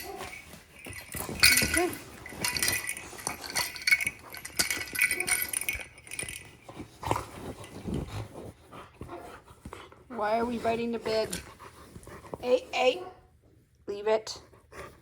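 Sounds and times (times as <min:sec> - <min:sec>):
jingle-bell toy rattling: 0:00.0 - 0:07.8.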